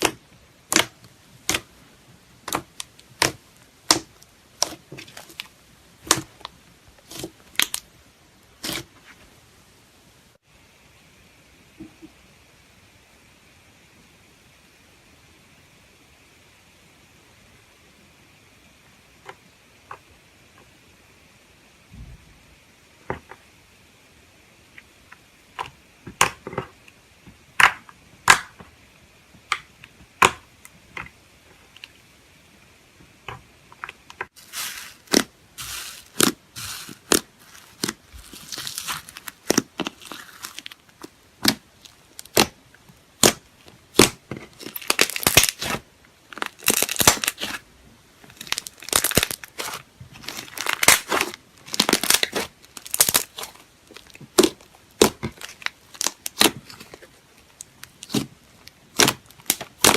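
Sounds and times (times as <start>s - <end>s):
slime squishing with pops and crackles: 0.0s - 9.3s, 24.6s - 32.1s, 32.9s - 59.9s.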